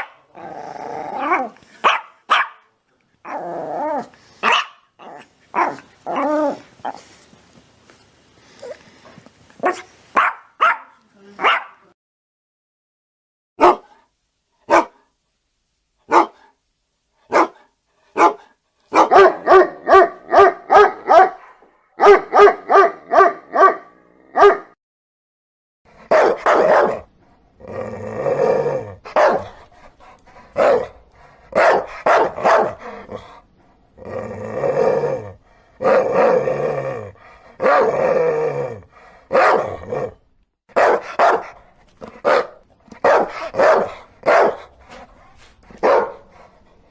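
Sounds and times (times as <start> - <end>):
dogs barking: 0.0 - 0.2, 1.8 - 2.7, 4.4 - 4.9, 9.6 - 11.8, 13.6 - 14.0, 14.7 - 15.0, 16.1 - 16.4, 17.3 - 24.8, 26.1 - 27.1, 29.1 - 29.6, 30.6 - 32.9, 39.3 - 39.8, 40.7 - 41.6, 42.2 - 44.7, 45.7 - 46.3.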